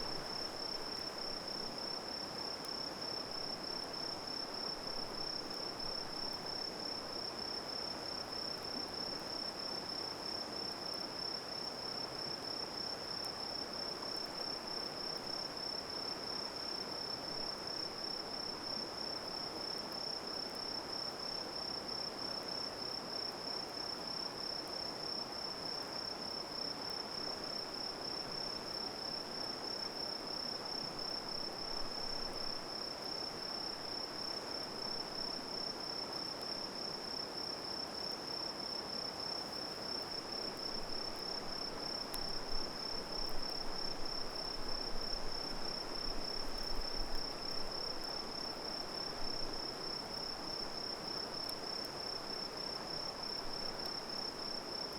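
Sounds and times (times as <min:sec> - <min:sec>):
crickets trilling: 0:26.9 - 0:54.9.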